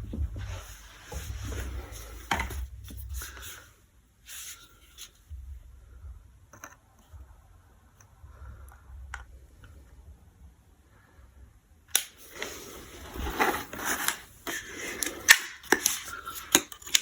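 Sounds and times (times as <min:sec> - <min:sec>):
tools scraping and rubbing: 0:12.2 - 0:17.0.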